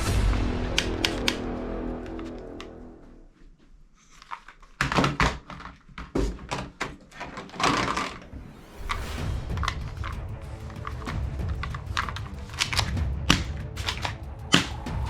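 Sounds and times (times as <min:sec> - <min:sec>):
music: 0:00.0 - 0:03.5, 0:08.2 - 0:15.0.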